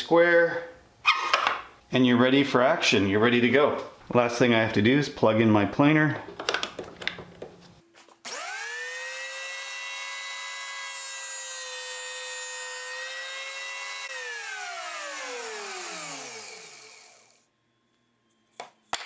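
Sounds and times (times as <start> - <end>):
electric planer whining: 8.3 - 17.4.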